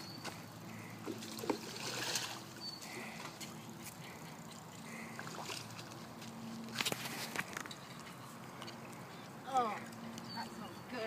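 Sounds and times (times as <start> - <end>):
person wading through shallow water: 0.7 - 3.4, 4.8 - 7.3.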